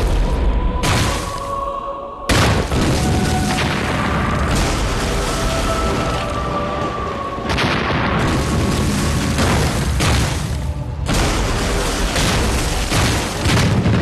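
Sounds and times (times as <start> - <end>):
loud explosion: 7.5 - 14.0.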